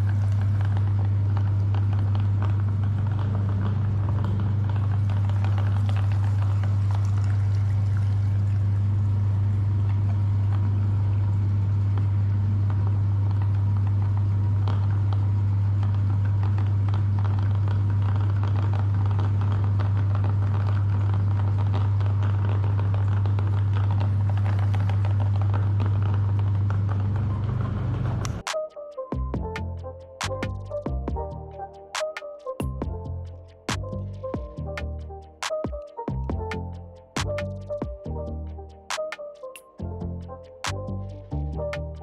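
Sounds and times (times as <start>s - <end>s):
meat grinder motor hum: 0.0s - 28.4s.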